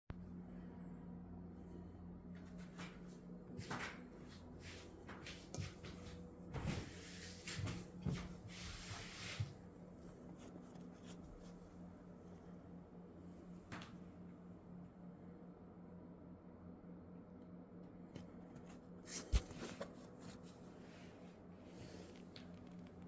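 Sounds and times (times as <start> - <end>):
faint steady hum: 0.1 - 23.0
rustling: 6.7 - 11.8, 18.2 - 20.9.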